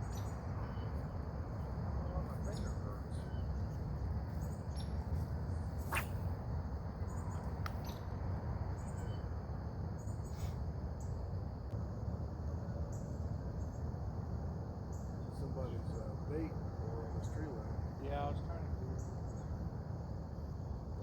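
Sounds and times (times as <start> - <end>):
bird chirps: 0.0 - 1.1, 2.1 - 6.3, 7.1 - 8.1
insects trilling: 0.0 - 21.0
low wind rumble: 0.0 - 21.0.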